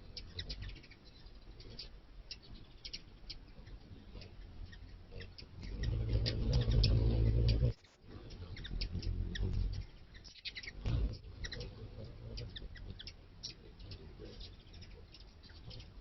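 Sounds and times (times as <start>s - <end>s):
wings whirring: 5.2s - 10.0s.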